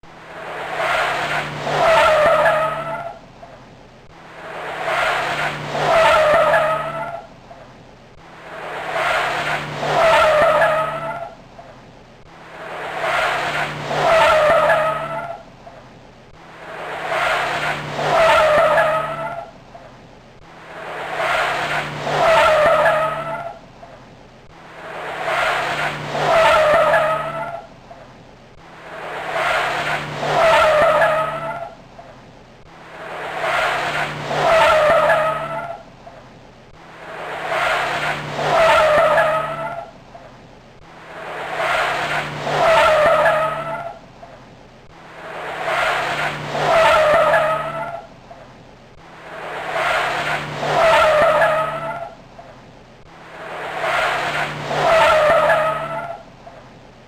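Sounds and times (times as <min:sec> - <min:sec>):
race car wailing past: 0:00.4 - 0:03.2, 0:04.4 - 0:07.2, 0:20.8 - 0:23.6, 0:24.8 - 0:27.6, 0:28.9 - 0:31.8, 0:33.0 - 0:35.8, 0:37.1 - 0:39.9, 0:41.2 - 0:44.0, 0:45.2 - 0:48.1, 0:49.3 - 0:52.2, 0:53.4 - 0:56.2.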